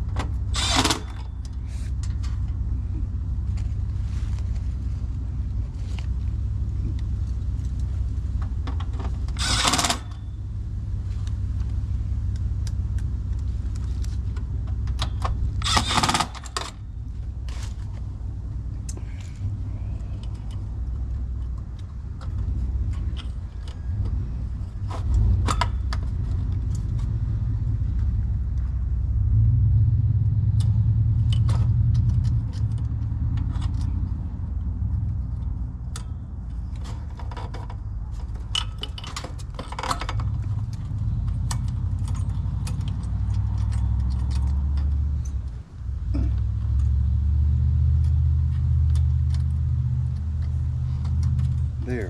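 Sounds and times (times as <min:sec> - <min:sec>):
low wavering rumble: 0:16.7 - 0:52.0
metallic clicks of hand tools: 0:38.4 - 0:45.5.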